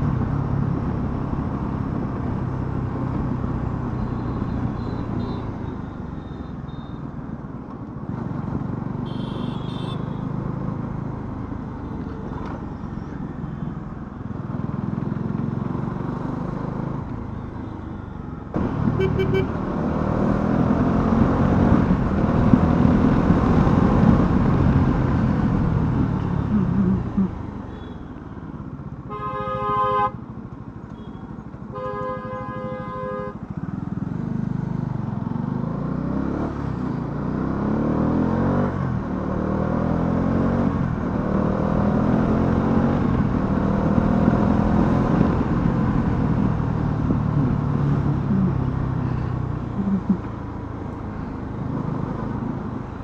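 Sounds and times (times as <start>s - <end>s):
vehicle horn: 4.0s - 7.1s, 9.0s - 10.3s, 18.9s - 19.6s, 27.6s - 28.2s, 29.0s - 30.3s, 30.9s - 33.5s
motorcycle engine revving: 18.5s - 27.8s, 33.5s - 53.0s.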